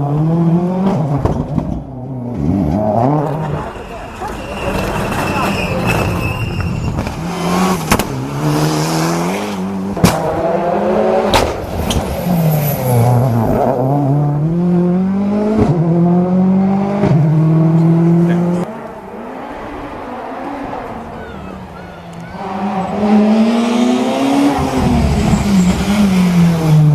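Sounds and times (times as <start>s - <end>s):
rally car engine at full throttle: 0.0s - 26.9s.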